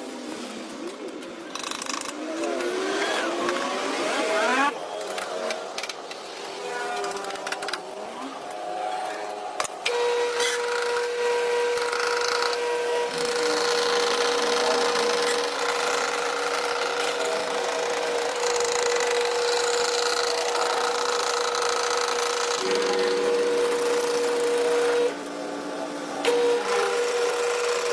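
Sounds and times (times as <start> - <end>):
power tool grinding: 9.6 - 25.3, 26.2 - 27.9.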